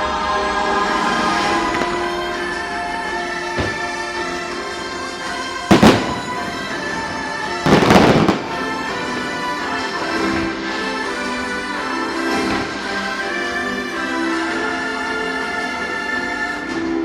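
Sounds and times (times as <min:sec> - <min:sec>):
fireworks show music: 0:00.0 - 0:17.0
fireworks bangs: 0:01.2 - 0:10.5.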